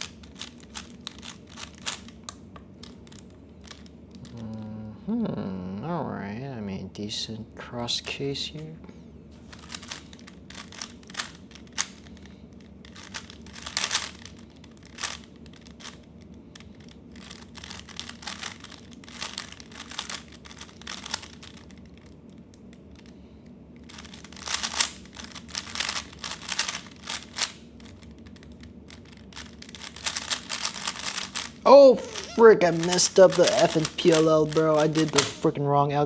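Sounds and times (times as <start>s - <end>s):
puzzle cube clicking: 0.0s - 4.5s, 9.5s - 12.2s, 12.8s - 16.0s, 16.8s - 21.8s, 23.8s - 35.6s.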